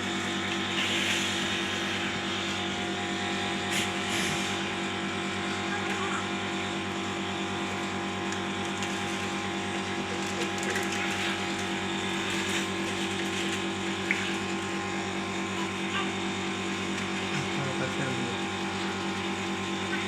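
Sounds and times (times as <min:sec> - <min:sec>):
machine hum with rattle: 0:00.0 - 0:20.0.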